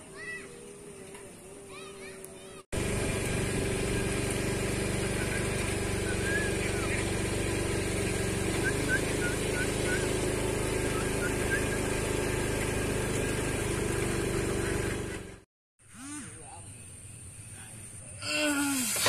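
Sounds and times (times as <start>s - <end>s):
engine idling: 2.8s - 15.4s.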